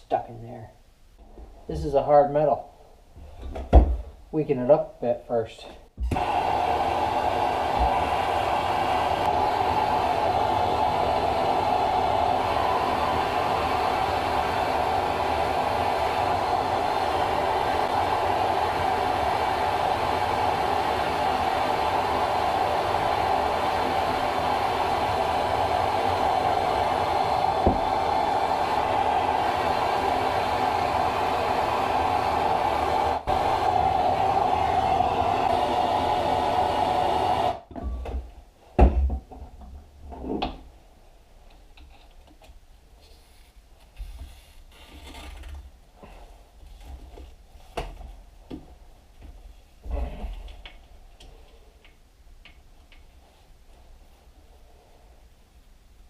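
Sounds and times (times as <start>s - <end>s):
loud rushing tool whir: 6.1s - 37.6s.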